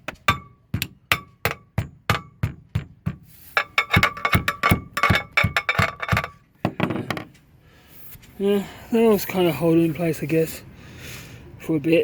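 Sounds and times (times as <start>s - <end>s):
hammer striking metal: 0.0s - 6.8s.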